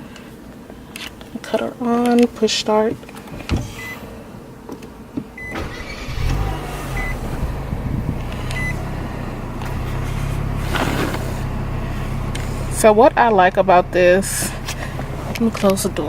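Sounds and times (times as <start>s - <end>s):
car warning chime beeps: 5.4s - 6.1s, 6.8s - 7.4s, 8.3s - 8.9s
car engine starting and idling: 5.4s - 16.0s.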